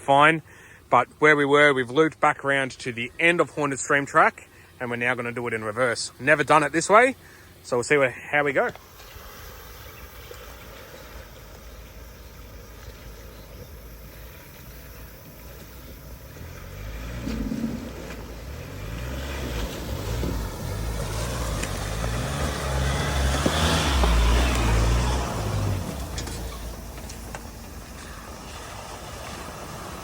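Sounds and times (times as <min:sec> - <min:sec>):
off-road vehicle engine revving: 0:01.1 - 0:30.0
rush of tyre noise: 0:08.8 - 0:30.0.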